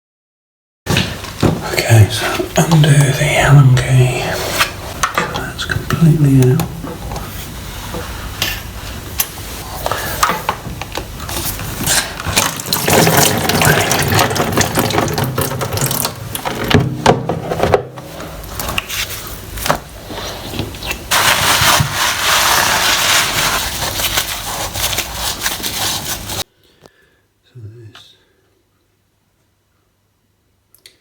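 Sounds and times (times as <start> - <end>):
steady hiss: 18.9 - 26.6.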